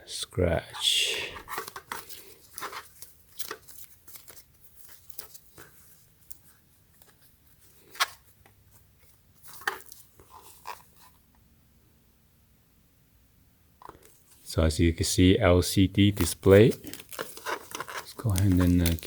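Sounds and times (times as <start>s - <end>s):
plastic packaging rustling: 1.5s - 6.5s, 16.0s - 19.0s.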